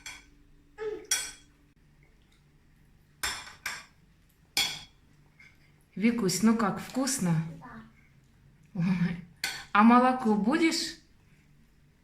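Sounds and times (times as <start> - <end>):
cutlery and dishes clinking: 1.0 - 1.5, 3.2 - 5.6.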